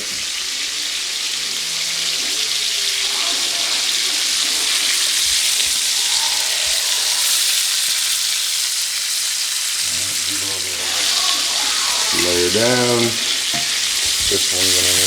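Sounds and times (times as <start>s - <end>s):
meat sizzling in hot oil: 0.0s - 15.0s.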